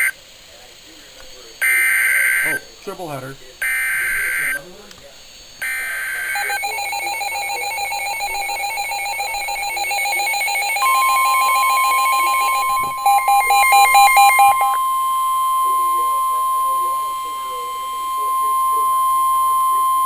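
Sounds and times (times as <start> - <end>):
steady warning alarm tone: 1.6 - 2.7, 3.6 - 4.7, 5.6 - 20.0
digital data burst: 3.6 - 4.6, 5.6 - 20.0
rapid electronic beeping: 3.6 - 4.6, 5.6 - 20.0.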